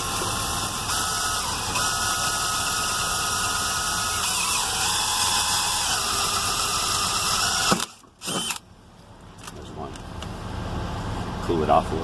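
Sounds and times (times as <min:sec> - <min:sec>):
power drill cutting into steel: 0:00.0 - 0:08.6.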